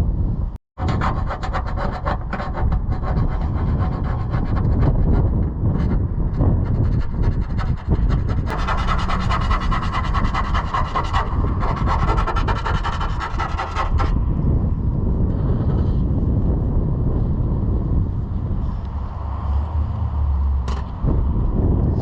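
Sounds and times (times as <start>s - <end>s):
wind rumble: 0.0s - 22.0s
metal rasping: 0.8s - 14.2s.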